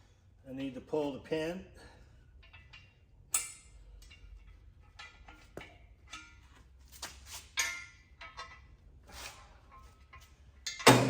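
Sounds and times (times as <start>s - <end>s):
metal parts clinking and knocking: 2.4s - 6.6s, 7.4s - 11.0s.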